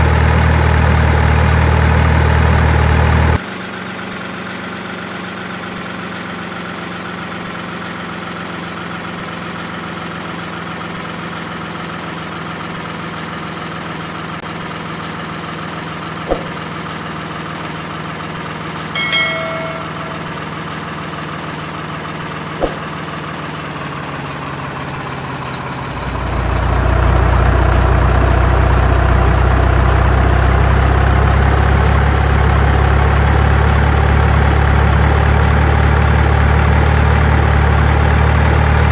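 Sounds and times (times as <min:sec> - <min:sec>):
sharp clicks: 0:17.6 - 0:17.8, 0:18.7 - 0:19.0
short beep: 0:18.7 - 0:20.5
diesel engine idling: 0:20.4 - 0:38.9.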